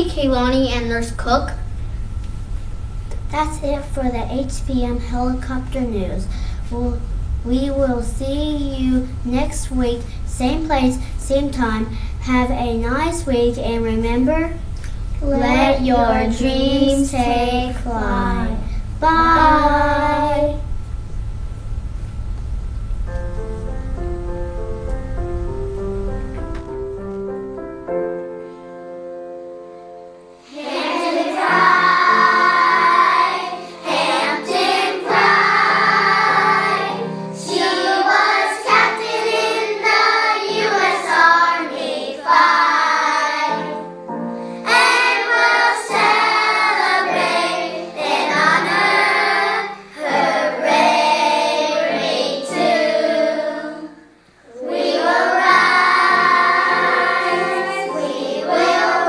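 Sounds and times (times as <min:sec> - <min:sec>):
children's choir singing: 0:00.0 - 0:01.5, 0:03.2 - 0:20.7, 0:30.4 - 0:59.0
instrumental backing music: 0:19.2 - 0:39.2.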